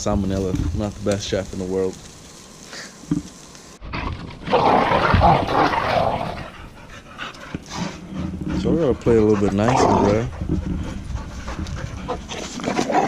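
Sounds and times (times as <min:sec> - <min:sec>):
dogs growling in play: 0:03.8 - 0:13.0.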